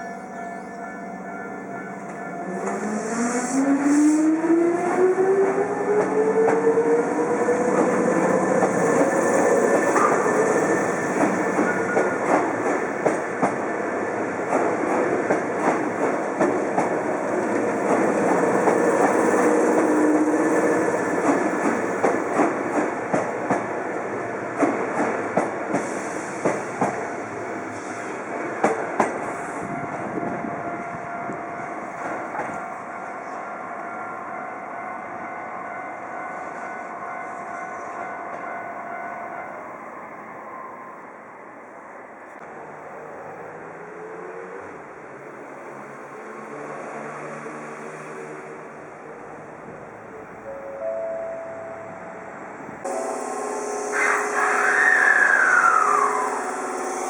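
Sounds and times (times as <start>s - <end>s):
train wheels clacking on rail joints: 11.0s - 19.9s, 21.1s - 23.8s, 24.5s - 27.9s, 28.6s - 30.4s
electric train motor whine: 52.9s - 57.0s.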